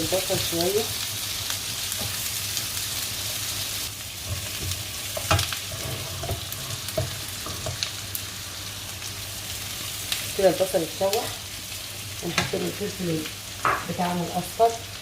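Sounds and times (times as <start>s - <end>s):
onions sizzling in oil: 0.0s - 15.0s
utensil scraping a pan: 4.3s - 7.8s.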